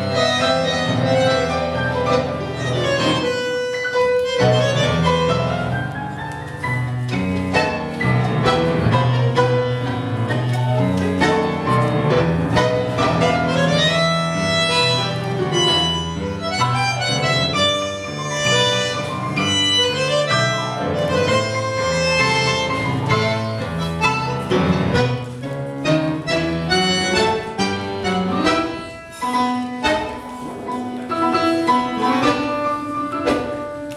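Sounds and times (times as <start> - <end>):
tango music from a duo: 0.0 - 33.9.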